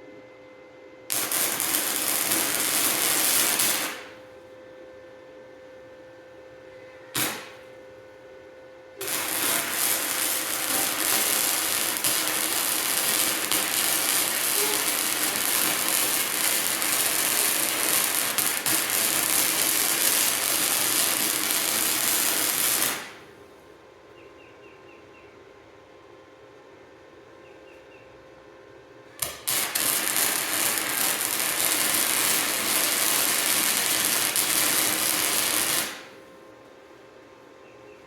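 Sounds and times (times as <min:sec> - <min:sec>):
welder arc crackling hiss: 0:01.1 - 0:04.3, 0:07.2 - 0:07.8, 0:09.0 - 0:23.4, 0:29.2 - 0:36.3.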